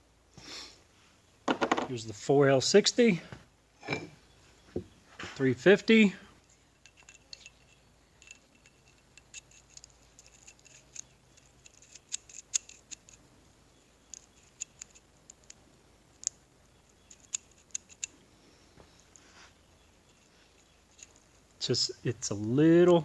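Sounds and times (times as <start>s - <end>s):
metal parts clicking: 6.8s - 13.2s, 14.1s - 15.6s, 17.0s - 18.1s, 20.1s - 21.5s.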